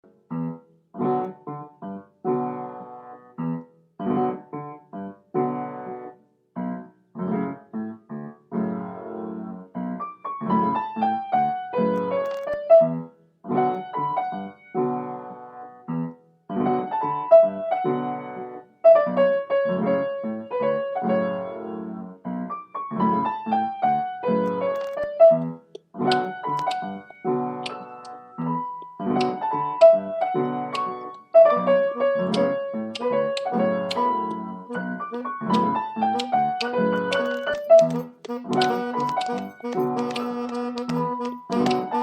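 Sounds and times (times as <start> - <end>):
keyboard music chords: 24.4 - 42.0.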